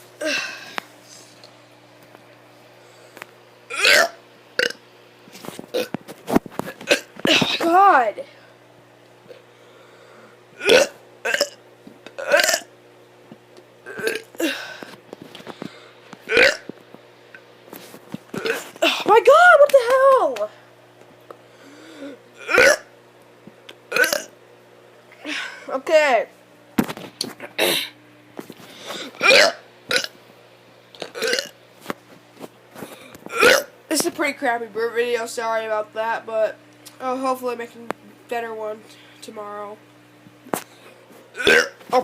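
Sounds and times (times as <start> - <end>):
child burping: 3.7 - 4.8, 6.8 - 7.7, 10.6 - 11.6, 12.2 - 12.7, 13.9 - 14.8, 16.3 - 16.7, 18.4 - 19.1, 22.0 - 22.9, 23.9 - 24.3, 27.4 - 28.0, 29.1 - 30.1, 31.0 - 31.6, 33.3 - 33.7, 41.4 - 41.8.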